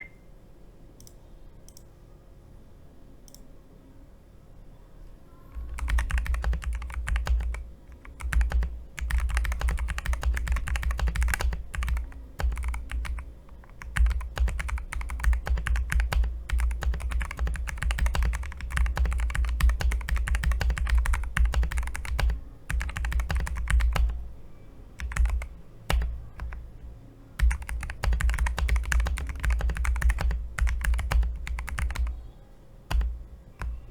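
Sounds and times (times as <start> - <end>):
keyboard typing clicks: 5.5 - 24.3, 25.0 - 26.7, 27.4 - 32.3, 32.9 - 33.9.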